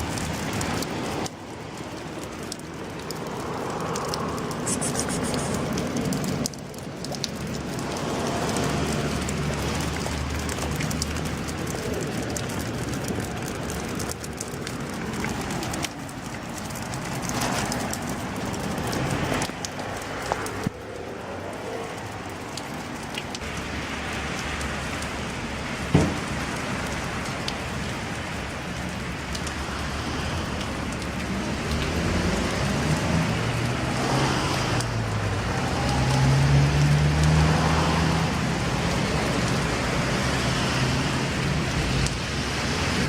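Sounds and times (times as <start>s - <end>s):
steady outdoor hiss: 0.0s - 7.0s
sharp knock: 26.0s - 26.2s.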